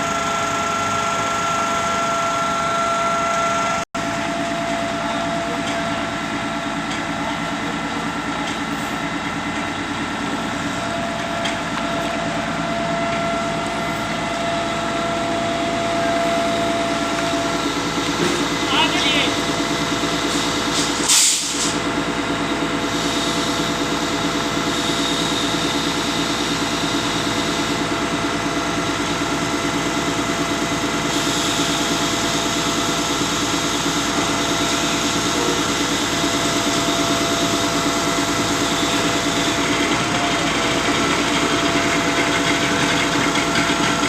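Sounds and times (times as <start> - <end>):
concrete pump engine running: 0.0 - 44.0.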